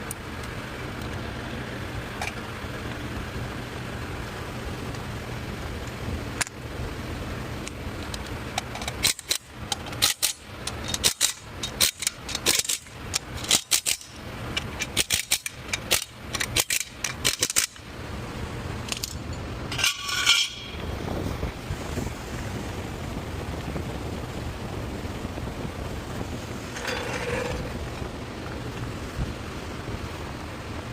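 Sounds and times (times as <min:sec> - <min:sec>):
steady shop hum: 0:00.0 - 0:30.9
metal tools clinking: 0:18.9 - 0:20.8, 0:26.7 - 0:27.7
ringing metal clank: 0:19.3 - 0:20.8.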